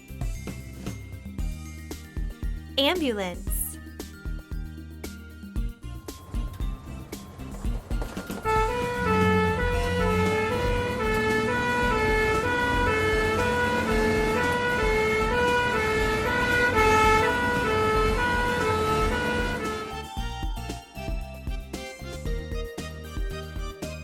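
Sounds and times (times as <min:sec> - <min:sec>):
ambulance two-tone siren: 0:08.4 - 0:20.3.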